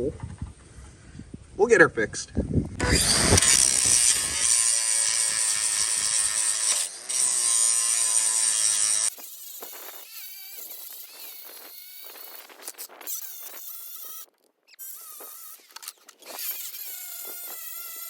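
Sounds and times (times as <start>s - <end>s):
power tool cutting metal: 2.8s - 18.0s.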